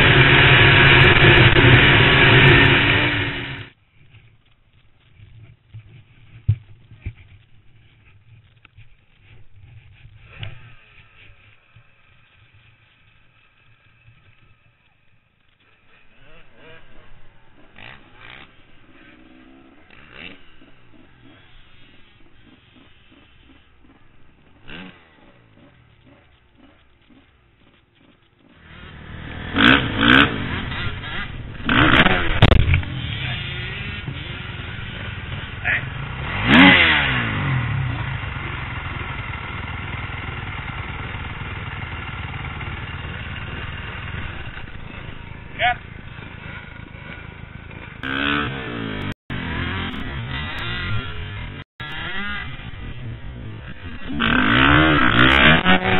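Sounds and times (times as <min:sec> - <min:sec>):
motorcycle engines revving: 0:00.0 - 0:03.8, 0:04.7 - 0:55.9
motorcycle engine idling: 0:37.2 - 0:48.0.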